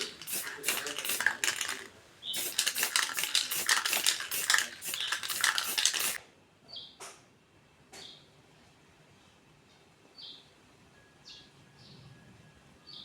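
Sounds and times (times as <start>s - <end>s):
rapid metallic rattling: 0.0s - 6.2s.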